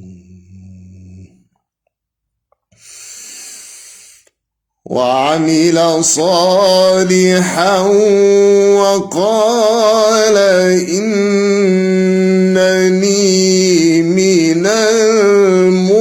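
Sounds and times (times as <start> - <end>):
man chanting a recitation: 0.0 - 1.5, 4.9 - 16.0
sharp in-breath: 2.7 - 4.4.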